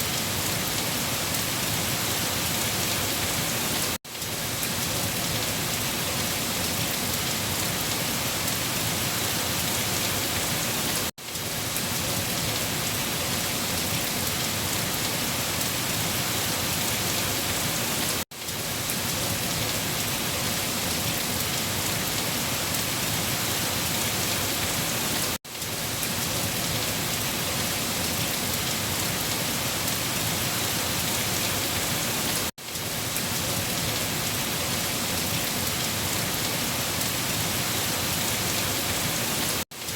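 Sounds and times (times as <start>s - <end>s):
heavy rain on leaves: 0.0s - 39.9s.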